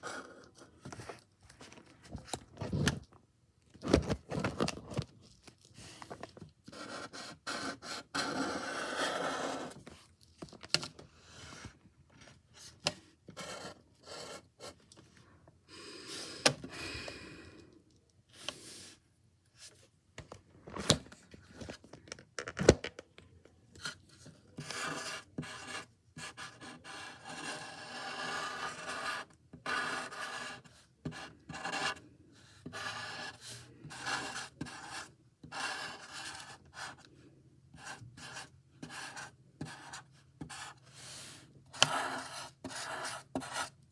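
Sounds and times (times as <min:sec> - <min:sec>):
drawing tool scratching paper: 0:06.7 - 0:09.8, 0:24.6 - 0:32.0, 0:32.6 - 0:37.0, 0:37.8 - 0:43.8.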